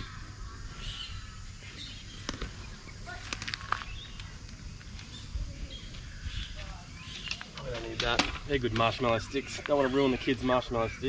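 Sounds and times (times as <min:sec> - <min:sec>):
wind rumble on microphone: 0:00.0 - 0:09.3
birds chirping: 0:00.0 - 0:11.0
firewood knocking and clattering: 0:07.4 - 0:09.1.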